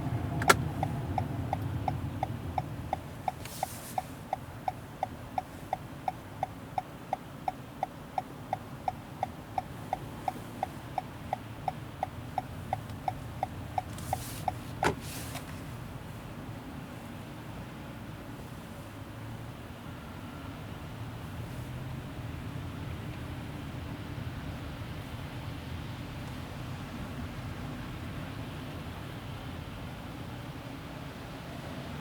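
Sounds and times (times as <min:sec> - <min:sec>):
turn signal ticking: 0:00.0 - 0:15.8
road hum inside car: 0:00.0 - 0:32.0.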